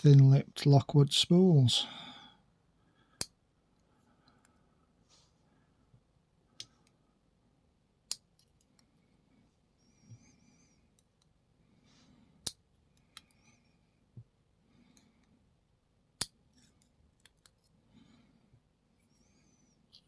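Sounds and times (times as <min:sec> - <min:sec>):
faint breathing: 0:01.8 - 0:03.2.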